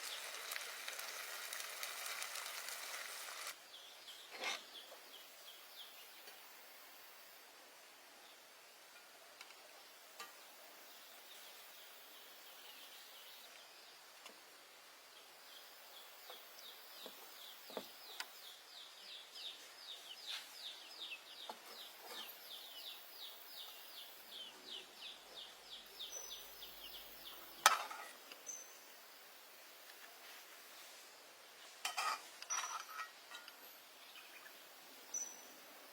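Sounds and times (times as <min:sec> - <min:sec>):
bird chirping: 0:15.2 - 0:27.7, 0:33.6 - 0:35.8.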